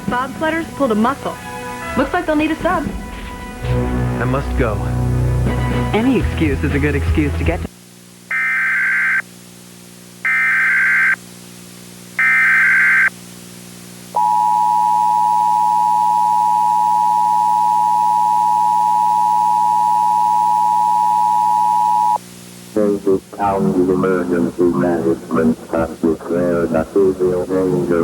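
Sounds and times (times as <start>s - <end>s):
screechy data bursts: 8.3s - 9.2s, 10.2s - 11.2s, 12.2s - 13.1s
faint low hum: 14.0s - 28.0s
two-tone attention signal: 14.2s - 22.2s.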